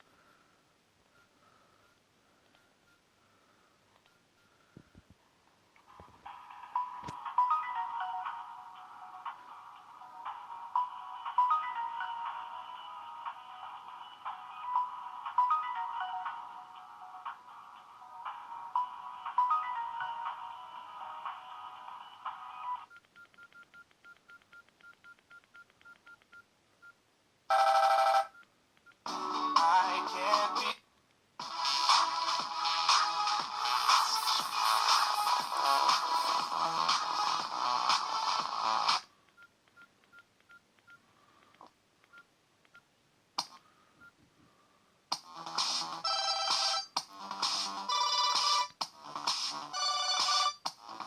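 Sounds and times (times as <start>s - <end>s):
phone keypad beeps: 22.8s - 29.0s, 39.4s - 41.0s
polyphonic phone ringtone: 27.5s - 28.4s, 33.6s - 36.5s, 46.0s - 47.0s, 49.7s - 50.6s.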